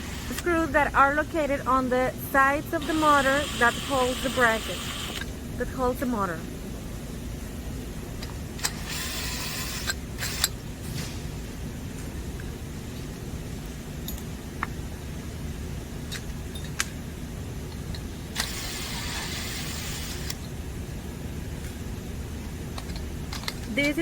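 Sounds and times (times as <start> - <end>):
steady low hum: 0.0 - 24.0
hissing whir: 2.3 - 5.3, 18.3 - 20.4.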